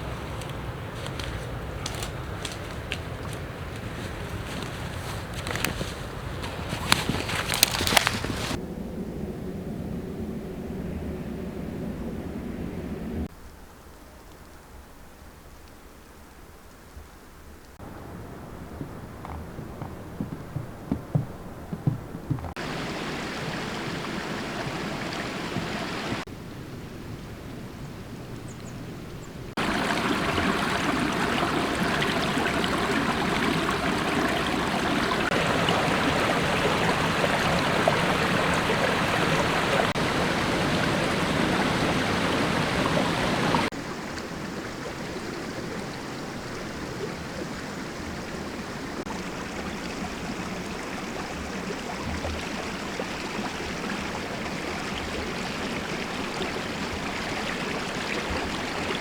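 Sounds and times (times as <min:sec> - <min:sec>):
water rushing: 0:00.0 - 0:08.6, 0:17.8 - 0:26.3, 0:29.5 - 0:59.0.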